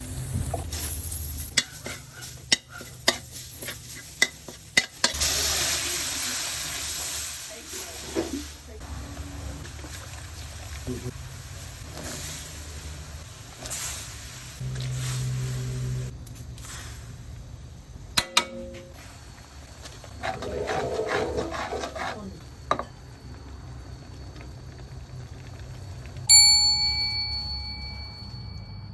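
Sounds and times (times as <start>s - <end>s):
food sizzling in oil: 0.0s - 17.4s
stirring and scraping in pot: 1.5s - 5.2s, 19.8s - 22.9s.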